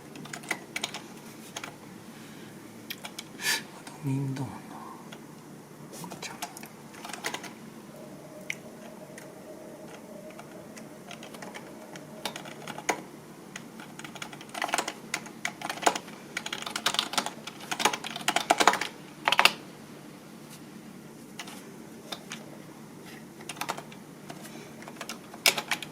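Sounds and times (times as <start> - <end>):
typing on computer keyboard: 0.1 - 1.8, 6.4 - 7.6, 9.9 - 19.6, 23.4 - 25.9.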